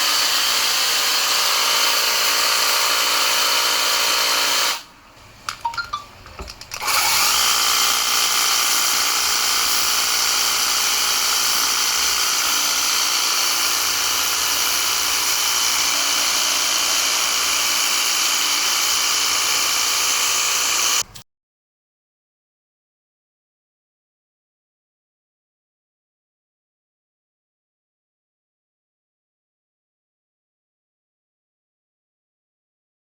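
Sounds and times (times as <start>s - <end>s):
clicks: 5.4s - 6.9s
pressure washer spraying: 6.8s - 21.0s.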